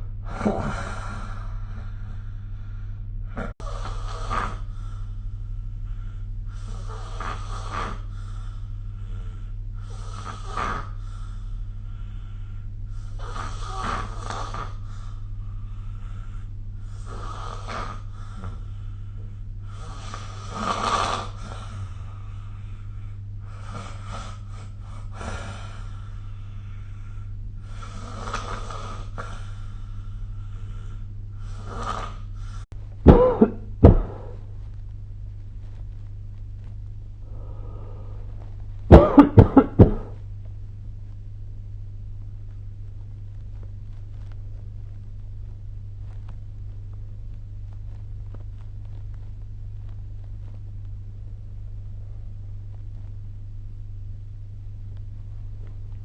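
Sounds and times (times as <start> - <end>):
person snoring: 0.0 - 34.5, 37.2 - 38.5
steady low hum: 0.0 - 56.0.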